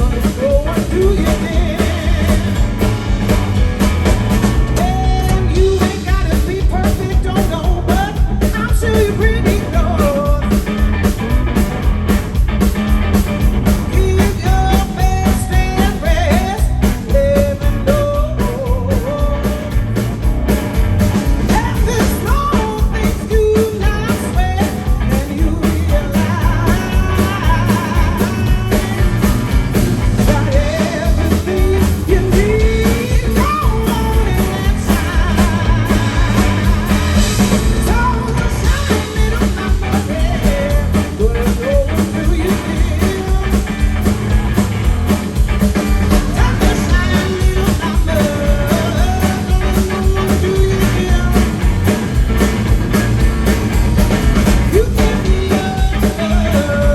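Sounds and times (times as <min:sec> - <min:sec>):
live blues band playing: 0:00.0 - 0:56.9
bending lead melody: 0:25.9 - 0:41.2.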